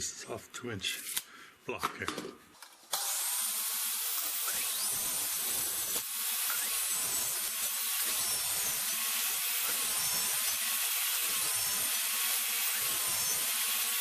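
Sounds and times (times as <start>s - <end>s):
table saw cutting wood: 2.9s - 14.0s.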